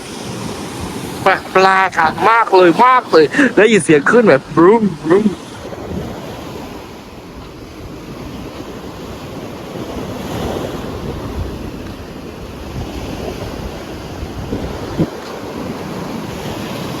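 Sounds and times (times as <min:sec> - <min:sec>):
sea waves washing onto beach: 0:00.0 - 0:17.0
wind buffeting microphone: 0:05.4 - 0:17.0.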